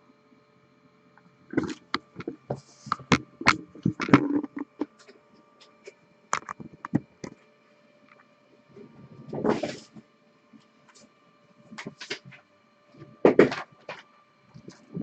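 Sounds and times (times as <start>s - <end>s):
faint electrical hum: 0.0s - 15.0s
sharp clicks and knocks: 1.6s - 4.9s, 6.3s - 7.4s.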